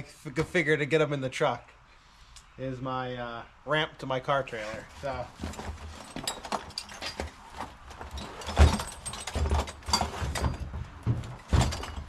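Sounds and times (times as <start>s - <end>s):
metal drum scraping and clattering: 4.6s - 12.0s.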